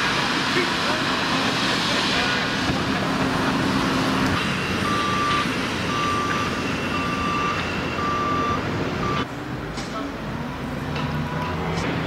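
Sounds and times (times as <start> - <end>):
street and engine noise: 0.0 - 12.0
vehicle backup alarm beeping: 4.4 - 9.3.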